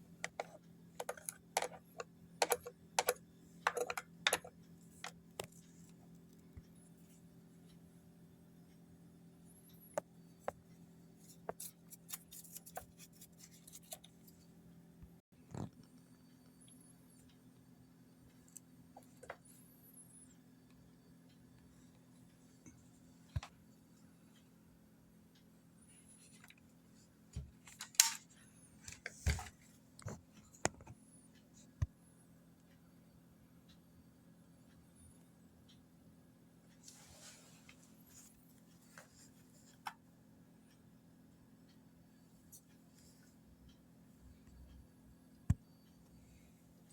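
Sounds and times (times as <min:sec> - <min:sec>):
low steady hum: 0:00.0 - 0:46.9
handling clicks and knocks: 0:00.2 - 0:05.5
faint clicks and taps: 0:00.2 - 0:07.8, 0:09.6 - 0:17.7, 0:18.3 - 0:19.6, 0:20.6 - 0:24.5, 0:26.1 - 0:32.0, 0:41.6 - 0:46.2.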